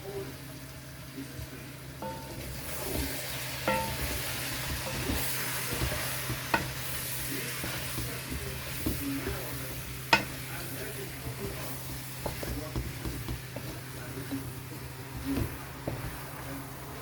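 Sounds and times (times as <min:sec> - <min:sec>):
chicken sizzling in hot oil: 0:00.0 - 0:17.0
spoon knocking against pot: 0:02.0 - 0:06.9, 0:07.6 - 0:10.5, 0:11.3 - 0:16.2.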